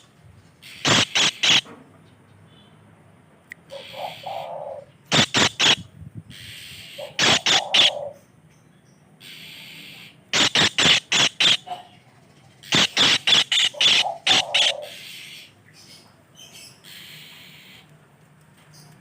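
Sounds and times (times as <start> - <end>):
bird squawking: 0.6 - 1.7, 3.7 - 8.2, 9.2 - 17.9.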